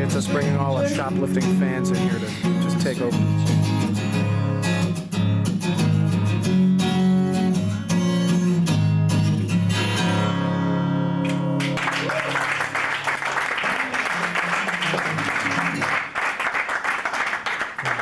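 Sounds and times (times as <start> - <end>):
acoustic guitar strumming: 0.0 - 12.8, 13.7 - 16.2.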